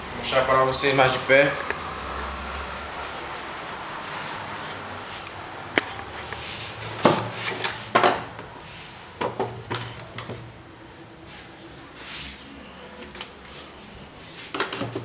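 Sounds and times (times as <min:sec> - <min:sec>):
hard objects knocking on wood: 0:07.9 - 0:08.5.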